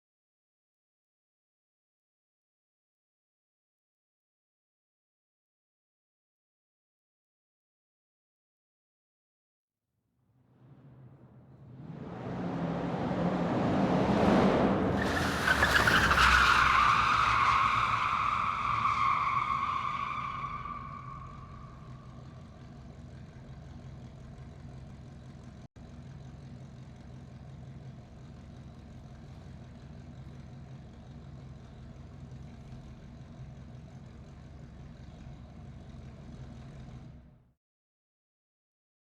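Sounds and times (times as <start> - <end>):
car engine idling: 14.7 - 37.5
tyre squeal: 15.0 - 22.3.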